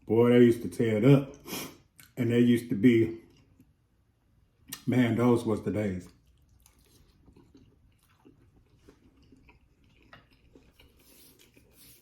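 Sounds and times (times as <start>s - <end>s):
faint chewing: 3.2s - 3.8s, 6.0s - 12.0s.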